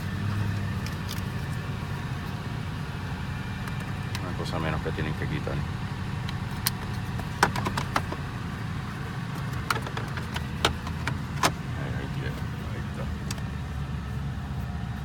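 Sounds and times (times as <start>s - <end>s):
car engine idling: 0.0s - 15.0s
sharp clicks and knocks: 6.2s - 8.3s, 9.3s - 11.6s.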